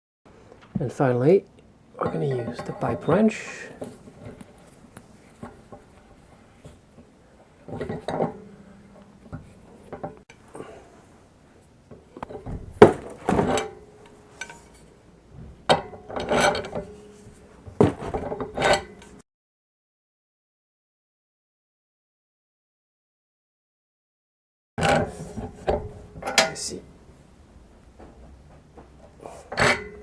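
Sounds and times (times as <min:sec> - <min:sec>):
pipe wrench clanking on metal valve: 0:07.7 - 0:10.2, 0:12.2 - 0:14.8, 0:15.7 - 0:17.1, 0:18.1 - 0:19.2, 0:24.8 - 0:26.8, 0:29.5 - 0:30.0.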